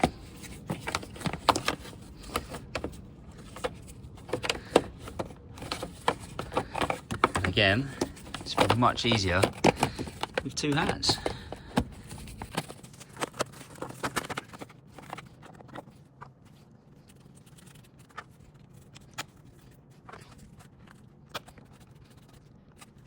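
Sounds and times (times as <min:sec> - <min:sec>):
clicks and knocks on engine parts: 0:00.0 - 0:15.8.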